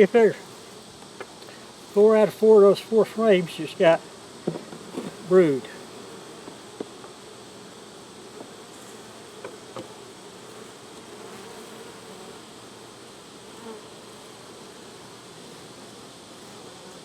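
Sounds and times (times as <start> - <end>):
bees buzzing: 0.0 - 17.0.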